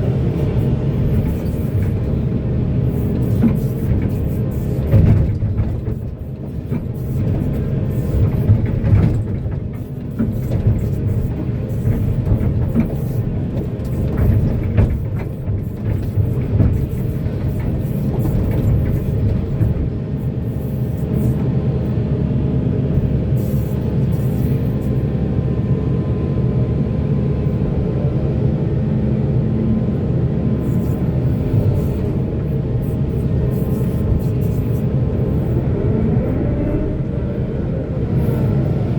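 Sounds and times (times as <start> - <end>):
diesel machinery engine drone: 0.0 - 38.9
machinery knocks and clacks: 0.2 - 20.0.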